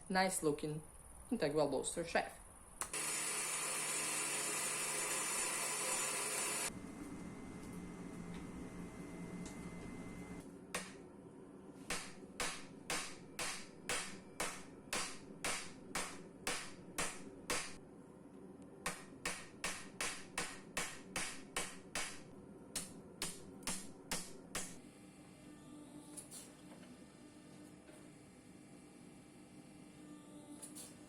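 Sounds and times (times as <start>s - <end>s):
hammer striking steel on anvil: 11.9s - 17.8s, 18.9s - 24.8s.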